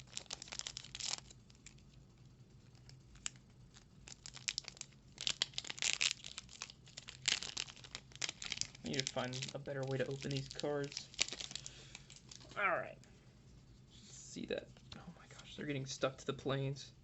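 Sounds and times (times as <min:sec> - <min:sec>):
foil wrapper crinkling and tearing: 0:00.0 - 0:01.8, 0:02.8 - 0:12.6.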